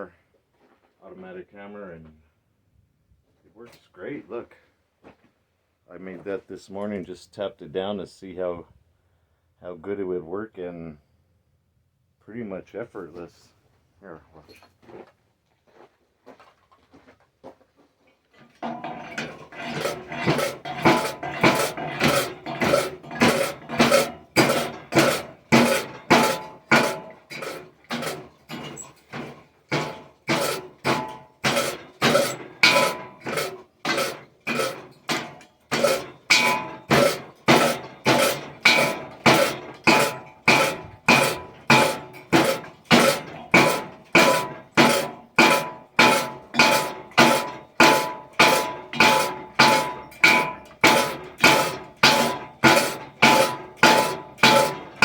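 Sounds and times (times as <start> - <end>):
power hammer striking steel: 18.6 - 55.0.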